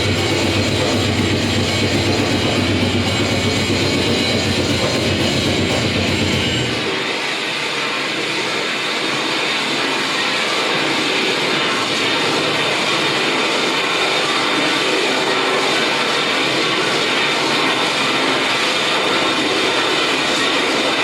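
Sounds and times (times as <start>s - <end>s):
harsh electronic noise music: 0.0s - 7.0s.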